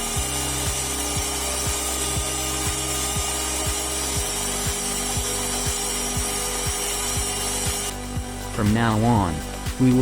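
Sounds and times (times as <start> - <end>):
sustained bass notes: 0.0 - 10.0
kick drum beat: 1.2 - 8.8.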